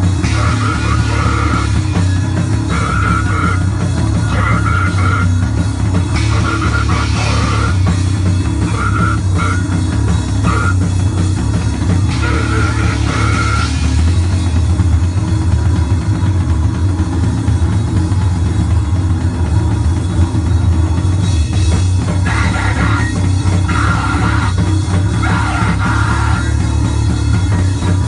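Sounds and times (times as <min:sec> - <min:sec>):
distorted guitar and bass: 0:00.0 - 0:28.0
drums: 0:00.0 - 0:28.0.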